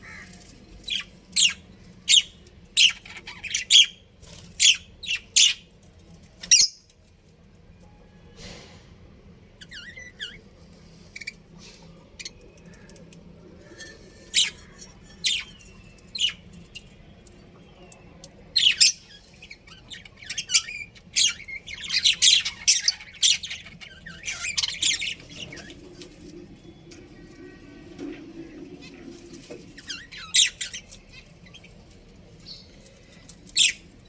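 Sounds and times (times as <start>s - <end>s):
budgerigars chirping and squawking: 0.0s - 5.7s, 13.6s - 16.5s, 18.6s - 26.2s, 27.0s - 34.0s.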